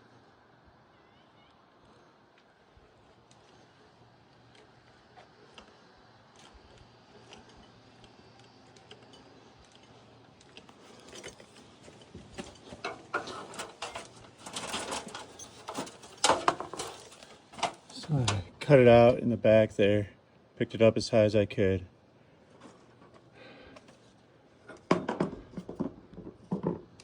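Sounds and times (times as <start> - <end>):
sharp clicks and clattering: 6.4 - 18.4.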